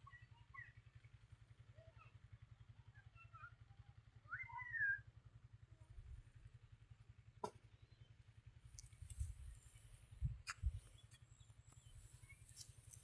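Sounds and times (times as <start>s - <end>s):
low pulsing hum: 4.9s - 13.0s.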